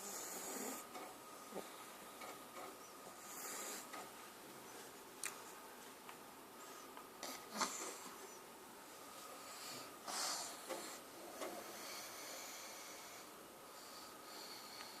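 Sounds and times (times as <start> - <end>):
small animal snoring faintly: 0.0 - 0.9, 3.1 - 4.0.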